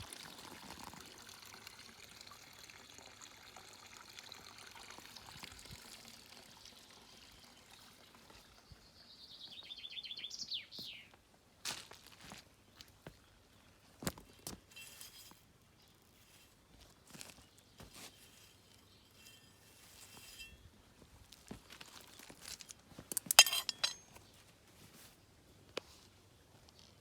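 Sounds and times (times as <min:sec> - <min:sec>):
water trickling: 0:00.0 - 0:09.0
small birds chirping: 0:07.5 - 0:11.2.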